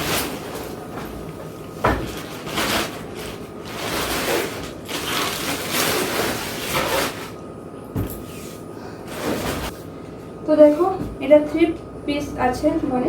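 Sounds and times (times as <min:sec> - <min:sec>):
suitcases scraping and rustling: 0:00.0 - 0:07.4, 0:08.0 - 0:09.8.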